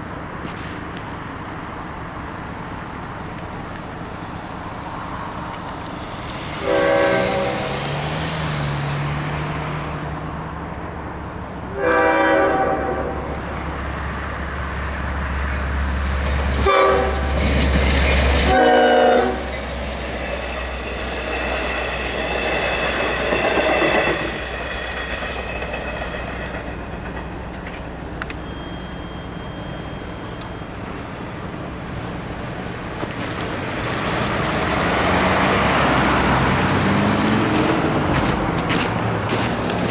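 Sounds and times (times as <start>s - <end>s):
diesel locomotive engine: 0.0s - 39.9s
rail cars clattering over joints: 0.0s - 39.9s
road traffic: 0.0s - 39.9s
locomotive horn: 6.5s - 8.2s, 11.7s - 13.6s, 16.5s - 17.5s, 18.4s - 19.6s.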